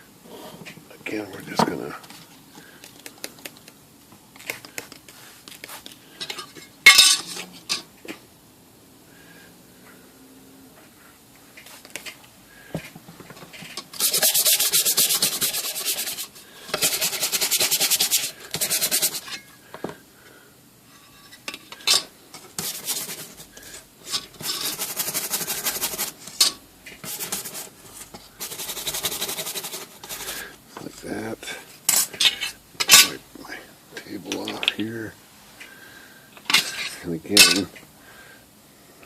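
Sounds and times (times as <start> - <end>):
scrubbing on metal panel: 13.9 - 19.4, 22.4 - 23.8, 24.4 - 26.4, 27.0 - 30.5.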